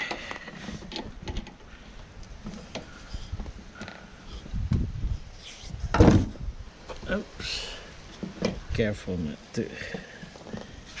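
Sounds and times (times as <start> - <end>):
dull thump: 5.9 - 6.5.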